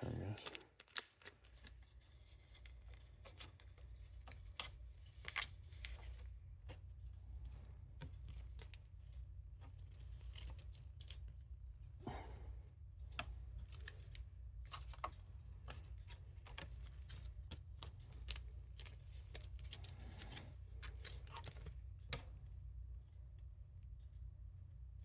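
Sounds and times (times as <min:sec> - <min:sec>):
packaging crinkling and rustling: 0:00.4 - 0:06.2, 0:13.6 - 0:22.2
steady low hum: 0:01.6 - 0:25.0.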